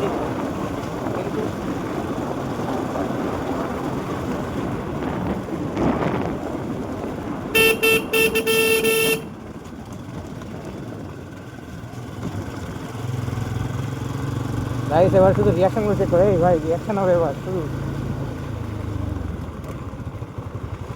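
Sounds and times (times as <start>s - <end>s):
wind noise: 0.0s - 12.6s
motorcycle engine: 0.0s - 20.9s
vehicle horn honking: 7.5s - 9.3s.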